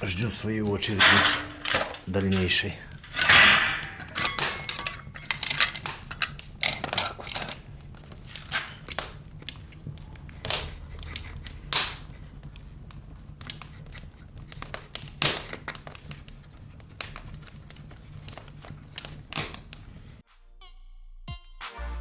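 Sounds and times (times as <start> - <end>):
low steady hum: 0.0 - 8.4
crinkling and rustling: 0.0 - 20.2.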